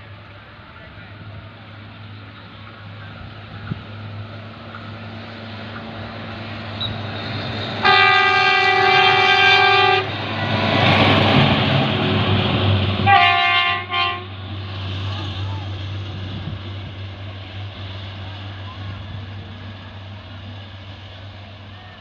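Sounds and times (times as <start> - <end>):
rail vehicle rumbling past: 0.0 - 22.0
rail vehicle horn: 7.6 - 12.2, 13.0 - 14.5.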